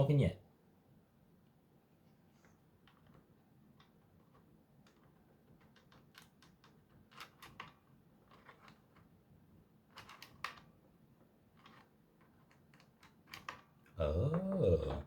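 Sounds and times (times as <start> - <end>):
faint clicks of toy parts handled: 2.2 - 14.0.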